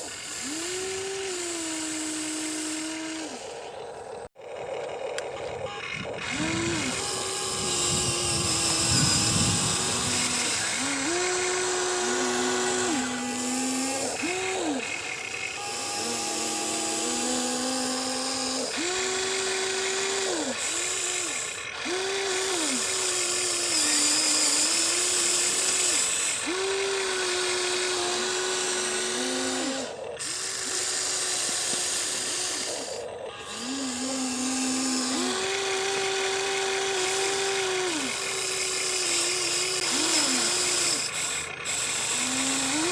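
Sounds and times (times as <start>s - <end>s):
gritty gear noise: 0.0s - 42.9s
toy excavator motors whining: 0.0s - 42.9s.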